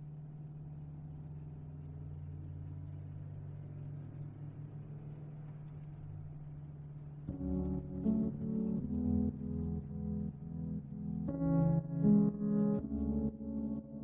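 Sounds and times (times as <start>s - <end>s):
low synthesizer drone: 7.0s - 14.0s.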